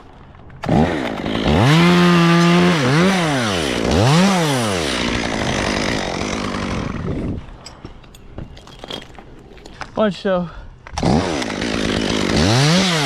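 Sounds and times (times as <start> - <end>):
two-stroke chainsaw revving: 0.6 - 7.3, 11.0 - 13.0.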